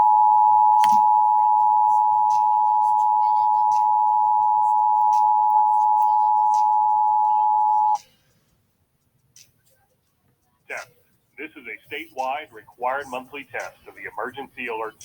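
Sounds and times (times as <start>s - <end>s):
two-tone alarm over radio: 0.0s - 8.0s.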